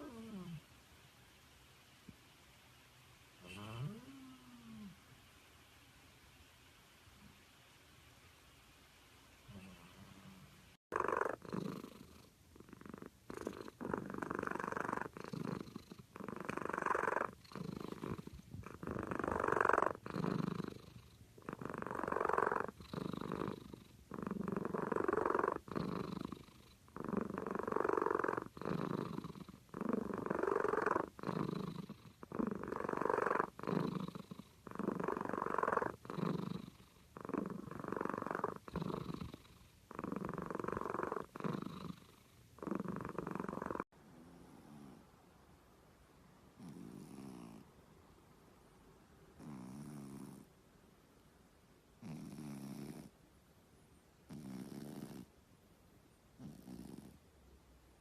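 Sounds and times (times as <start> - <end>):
cat snoring: 0.0 - 0.6, 3.4 - 5.0, 9.5 - 45.1, 46.5 - 47.7, 49.3 - 50.5, 52.0 - 53.2, 54.3 - 55.3, 56.4 - 57.2.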